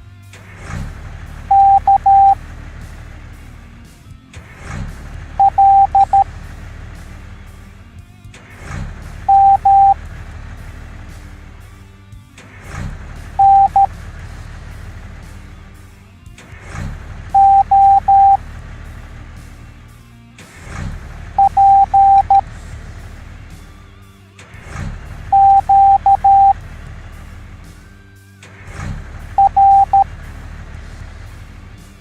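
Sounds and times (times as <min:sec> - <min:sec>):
morse code beeps: 0:01.5 - 0:02.4, 0:05.4 - 0:06.3, 0:09.3 - 0:10.0, 0:13.4 - 0:13.9, 0:17.4 - 0:18.4, 0:21.4 - 0:22.4, 0:25.3 - 0:26.6, 0:29.4 - 0:30.1.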